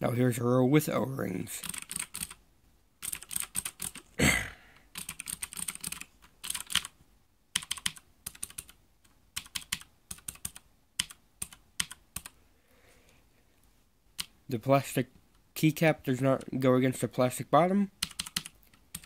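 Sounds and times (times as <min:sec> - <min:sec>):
clicky keyboard keys typing: 0:01.6 - 0:02.4, 0:03.0 - 0:04.1, 0:04.8 - 0:12.4, 0:18.0 - 0:19.0.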